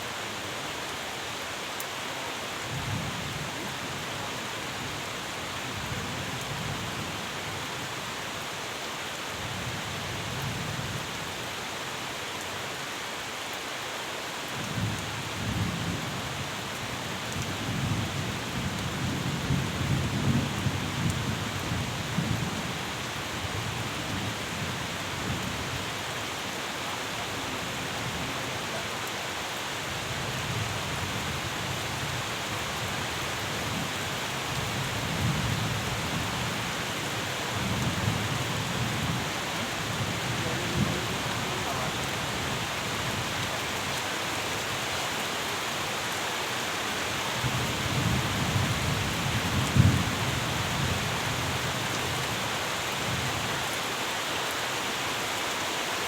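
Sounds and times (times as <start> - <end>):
steady rain falling: 0.0 - 56.0
low rolling thunder: 37.6 - 43.2.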